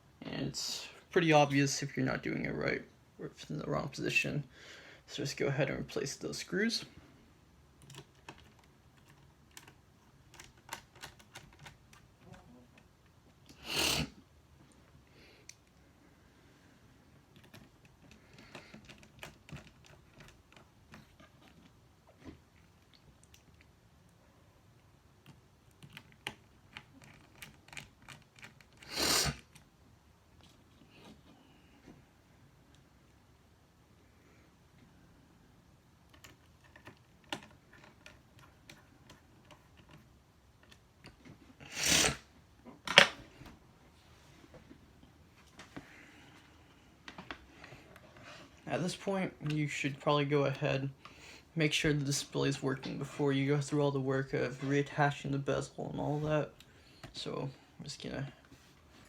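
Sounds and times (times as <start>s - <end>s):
brief scrape: 41.7s - 42.2s.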